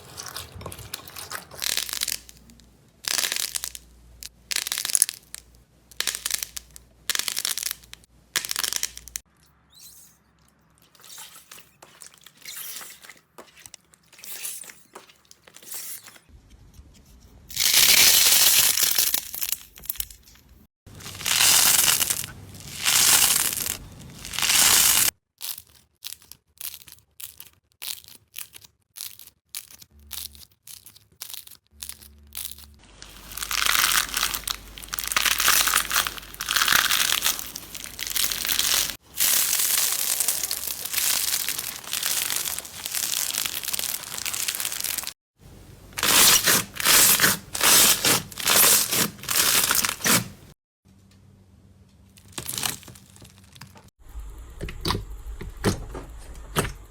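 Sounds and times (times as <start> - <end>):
slime crackling: 0.0 - 9.3, 21.0 - 25.6, 30.1 - 45.2.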